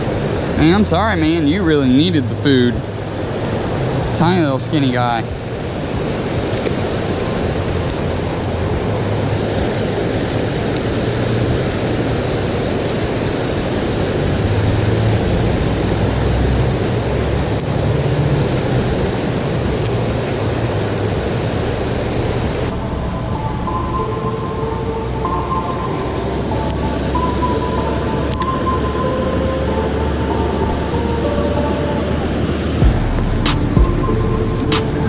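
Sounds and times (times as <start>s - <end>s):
river rapids rushing: 0.0s - 22.8s.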